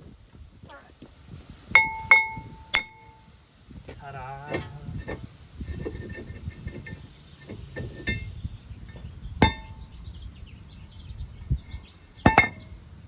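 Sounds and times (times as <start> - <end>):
loud ringing metallic clink: 1.8 - 3.2, 9.4 - 9.9.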